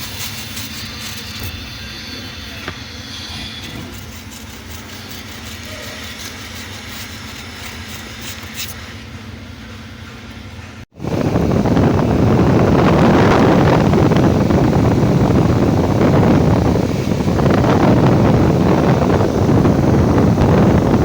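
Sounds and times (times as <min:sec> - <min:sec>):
pressurised spray hissing: 0:00.0 - 0:10.3.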